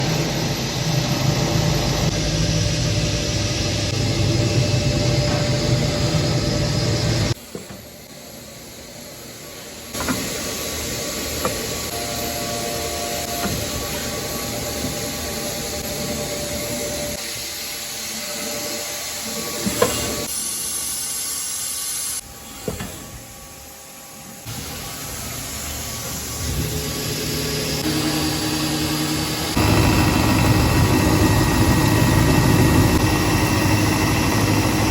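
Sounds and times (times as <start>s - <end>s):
milling machine cutting metal: 24.5s - 34.9s.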